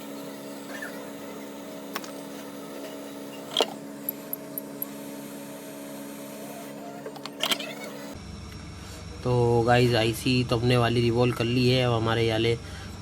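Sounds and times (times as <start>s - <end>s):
hot air blower whirring: 0.0s - 8.2s
tool clicks: 1.9s - 5.0s, 7.0s - 8.0s.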